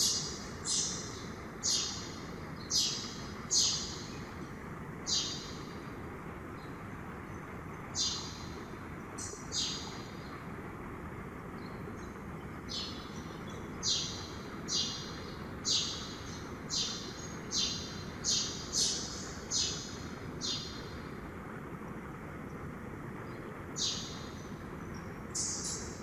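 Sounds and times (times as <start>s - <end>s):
high bird calls: 0.0s - 4.2s, 9.2s - 10.4s, 12.7s - 21.0s, 23.8s - 26.0s.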